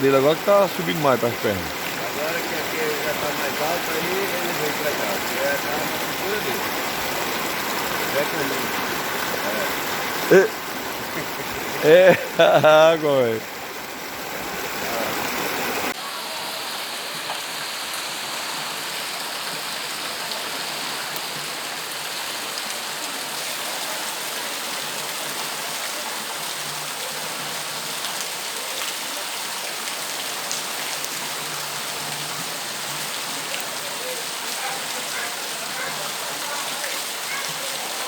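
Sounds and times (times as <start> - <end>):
heavy rain falling: 0.0 - 38.0.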